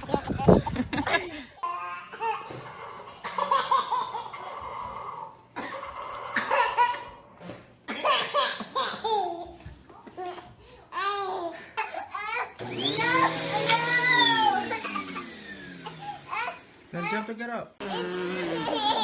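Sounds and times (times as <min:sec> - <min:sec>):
baby laughing: 0:00.0 - 0:07.2, 0:08.0 - 0:19.0.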